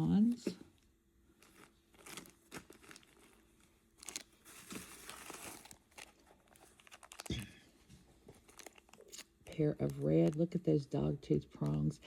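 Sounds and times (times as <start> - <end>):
plastic bag crinkling: 1.3 - 10.7.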